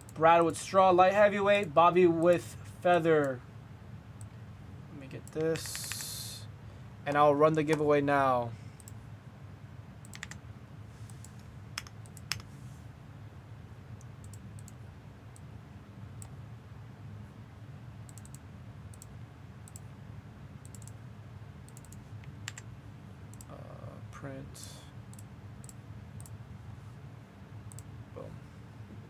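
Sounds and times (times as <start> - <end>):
steady low hum: 0.0 - 29.0
keyboard and mouse clicks: 5.2 - 6.2, 10.0 - 10.4, 11.2 - 12.5, 18.1 - 18.4, 20.6 - 21.0, 21.7 - 22.7, 27.7 - 27.9.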